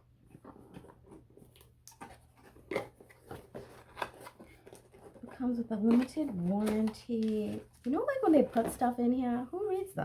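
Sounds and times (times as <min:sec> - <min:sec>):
cardboard and paper rustling: 0:00.0 - 0:09.5.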